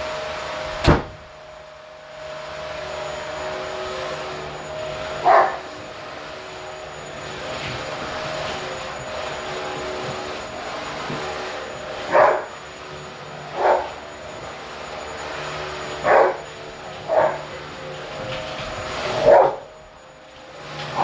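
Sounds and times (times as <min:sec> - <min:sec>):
dog barking: 0:05.2 - 0:05.6, 0:12.1 - 0:12.5, 0:16.0 - 0:16.4, 0:17.1 - 0:17.4, 0:19.3 - 0:19.6.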